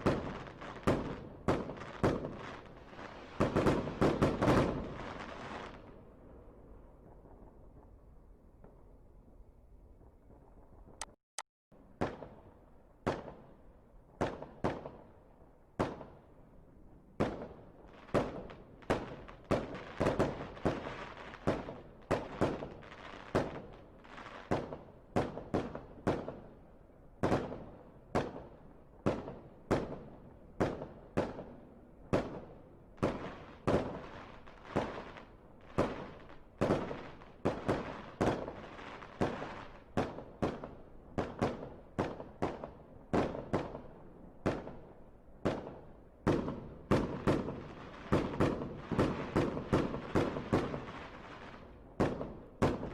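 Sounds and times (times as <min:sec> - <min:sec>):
fireworks bursting: 0:00.0 - 0:06.0, 0:45.4 - 0:52.9.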